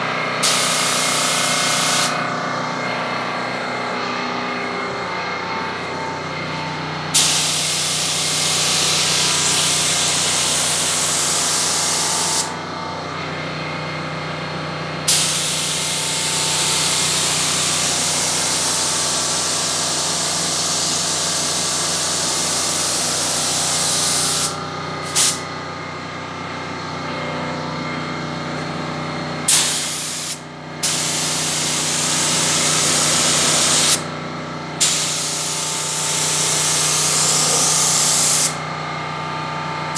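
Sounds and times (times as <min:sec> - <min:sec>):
spray hissing: 0:00.4 - 0:02.2, 0:07.2 - 0:12.5, 0:29.5 - 0:34.0, 0:34.8 - 0:38.6.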